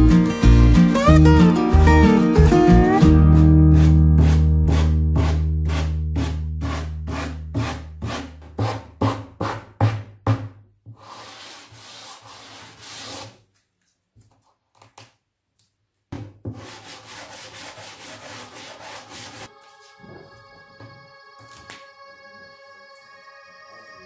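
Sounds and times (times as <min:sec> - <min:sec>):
background music: 0:00.0 - 0:08.2, 0:18.6 - 0:24.0
sanding on wood: 0:03.8 - 0:08.3, 0:11.0 - 0:13.2, 0:16.6 - 0:19.5.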